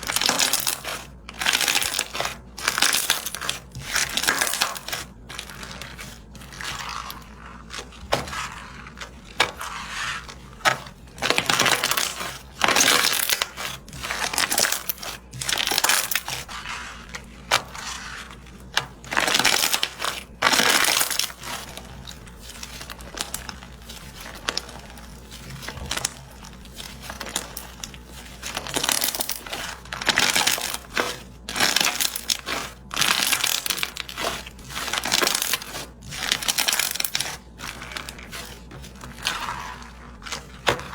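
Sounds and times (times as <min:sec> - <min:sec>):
slime crackling and popping: 0:00.0 - 0:10.0, 0:11.0 - 0:16.5.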